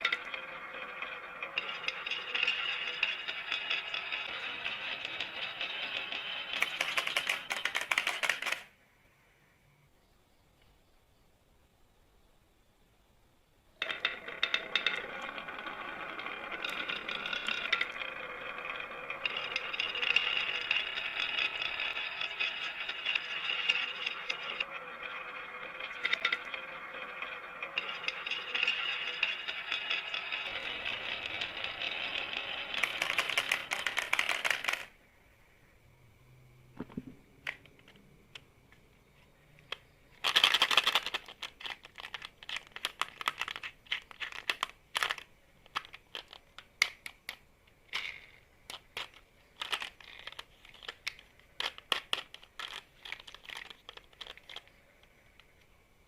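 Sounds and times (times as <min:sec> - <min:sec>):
marbles rattling down a marble run: 0:00.0 - 0:08.7, 0:13.8 - 0:35.0, 0:40.2 - 0:55.5.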